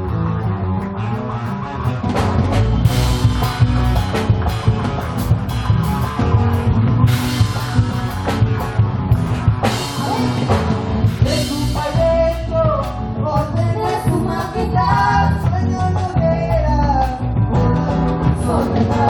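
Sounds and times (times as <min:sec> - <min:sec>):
folk band with guitars and drums: 0:00.0 - 0:19.0
person singing: 0:09.8 - 0:19.0.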